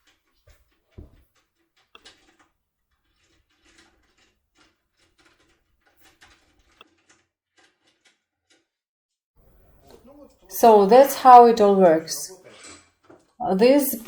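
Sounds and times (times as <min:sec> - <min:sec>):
key scraping in a lock cylinder: 0:01.6 - 0:08.7.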